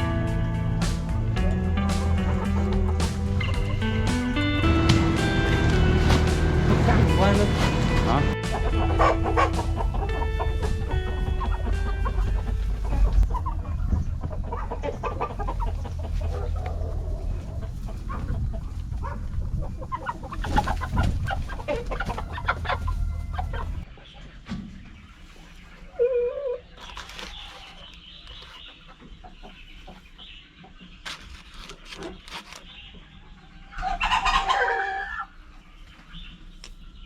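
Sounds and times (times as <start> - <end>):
low rumble: 0.0 - 23.8
chickens clucking: 0.0 - 37.0.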